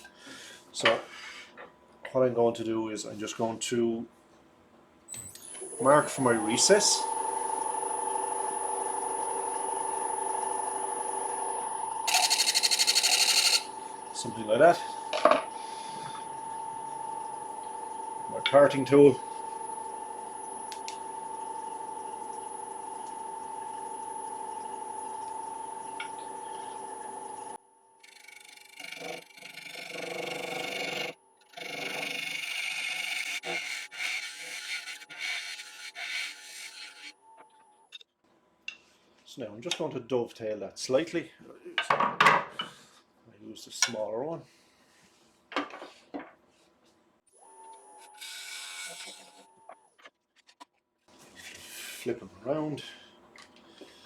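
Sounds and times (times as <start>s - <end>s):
wood lathe motor whine: 5.5s - 37.4s, 47.4s - 49.8s
tool scratching spinning wood: 12.0s - 15.1s, 28.0s - 37.2s, 48.0s - 49.5s.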